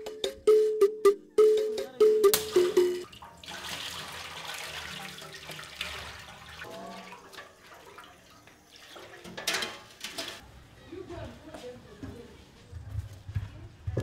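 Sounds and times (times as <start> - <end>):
water pouring and splashing: 2.4 - 10.4.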